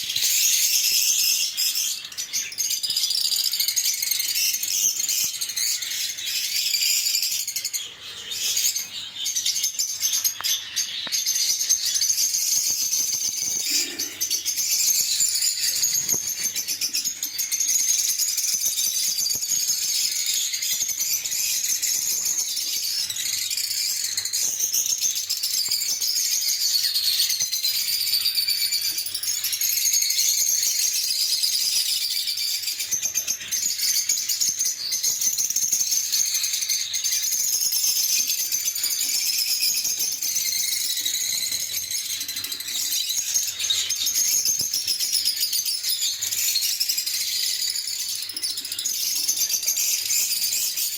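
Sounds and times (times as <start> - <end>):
parrots chattering: 13.4 - 14.7.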